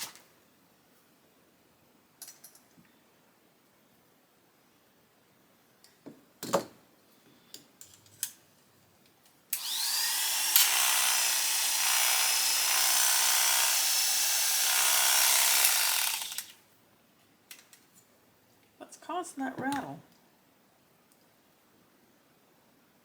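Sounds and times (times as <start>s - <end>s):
electric clipper whining: 9.6s - 16.6s.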